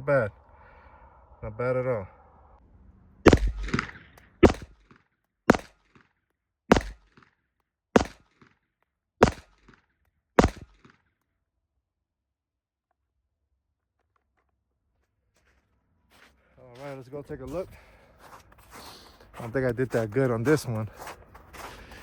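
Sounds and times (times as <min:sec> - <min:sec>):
pistol shots with short echo: 0:03.3 - 0:04.9, 0:05.5 - 0:06.0, 0:06.7 - 0:07.3, 0:08.0 - 0:08.5, 0:09.2 - 0:09.8, 0:10.4 - 0:11.0.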